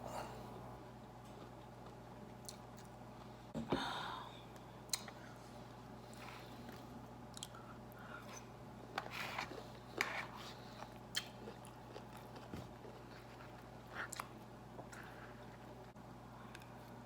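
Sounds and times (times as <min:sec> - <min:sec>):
person chewing food: 0:01.2 - 0:03.3, 0:06.0 - 0:07.6, 0:09.0 - 0:15.9.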